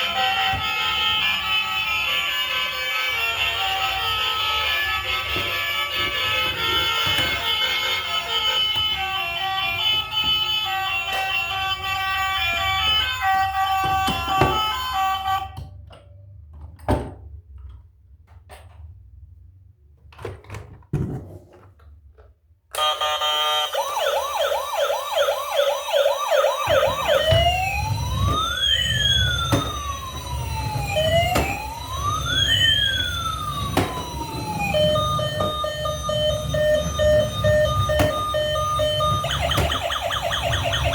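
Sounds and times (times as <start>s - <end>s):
toy electronic siren: 0.0s - 15.7s, 22.8s - 40.9s
knocks and clicks: 33.0s - 40.9s.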